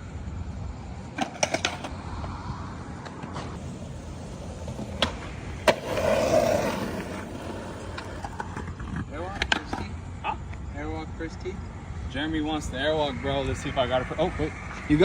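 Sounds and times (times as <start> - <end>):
skateboard wheels rolling on concrete: 0.0 - 15.0
sharp skateboard cracks: 1.1 - 2.0, 3.0 - 9.9
skateboard clacking: 1.1 - 2.0, 3.0 - 9.9.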